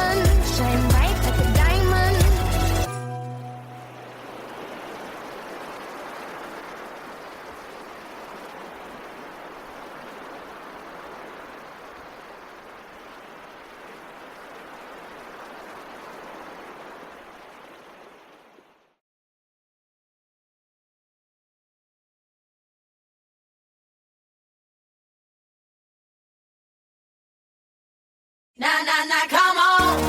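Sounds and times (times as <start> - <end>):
steady rushing noise: 3.6 - 18.6.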